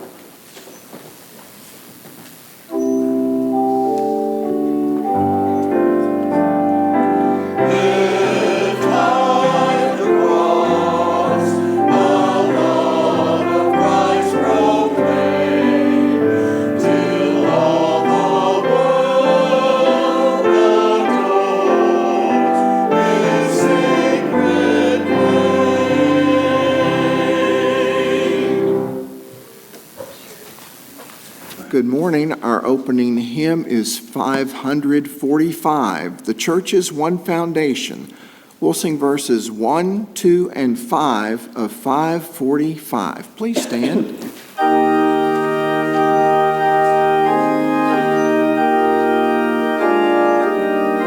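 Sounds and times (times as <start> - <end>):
choir singing a sacred piece: 2.7 - 29.5, 44.6 - 51.0
held keyboard chords: 2.7 - 29.6, 44.6 - 51.0.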